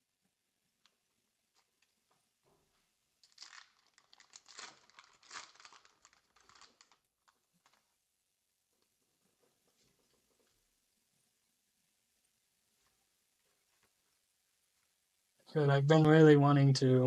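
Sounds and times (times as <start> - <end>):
foil wrapper crinkling and tearing: 3.2 - 8.0.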